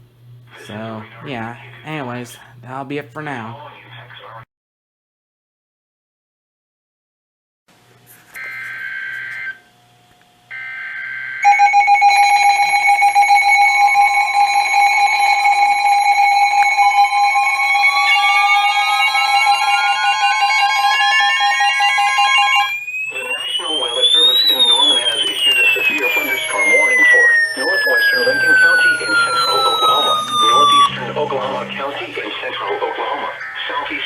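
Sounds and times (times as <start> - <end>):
two-tone attention signal: 11.5 - 34.0
rising whistle: 12.6 - 33.4
warbling data header bursts: 23.0 - 34.0.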